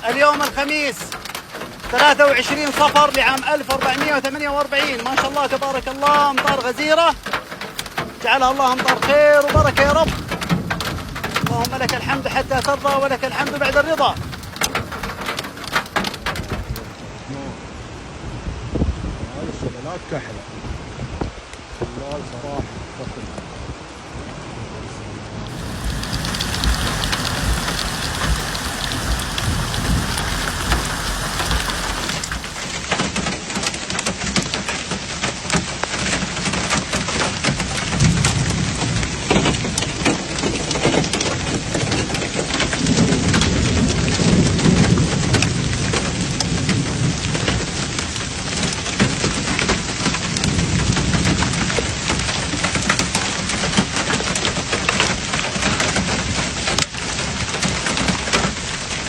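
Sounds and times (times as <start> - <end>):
heavy rain pouring: 0.0 - 17.3, 25.5 - 59.0
deep rumbling: 25.5 - 33.3.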